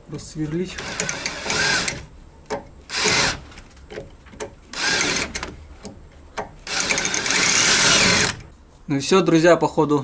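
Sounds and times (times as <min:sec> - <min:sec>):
cordless drill boring: 0:00.8 - 0:02.1, 0:02.9 - 0:03.4, 0:04.7 - 0:05.5, 0:06.6 - 0:08.4
sharp clicks of drill bit: 0:00.8 - 0:08.4.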